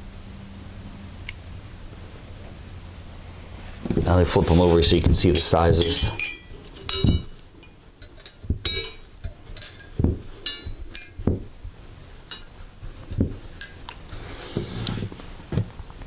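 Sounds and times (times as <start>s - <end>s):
metal wrenches clinking: 5.3s - 11.4s, 13.6s - 13.9s.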